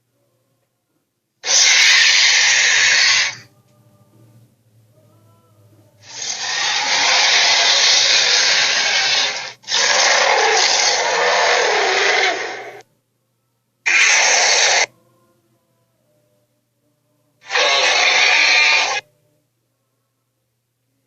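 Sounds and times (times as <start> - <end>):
cartoon dinosaur screech: 1.4 - 3.5, 6.0 - 12.8, 13.9 - 14.9, 17.4 - 19.0.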